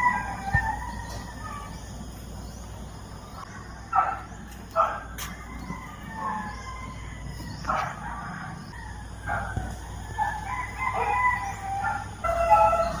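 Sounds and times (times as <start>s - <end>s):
rooster crowing: 0.0s - 1.8s, 5.2s - 13.0s.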